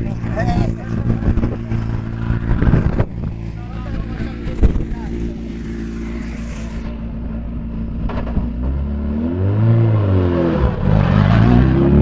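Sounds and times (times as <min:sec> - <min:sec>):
rally car engine accelerating: 0:00.0 - 0:12.0.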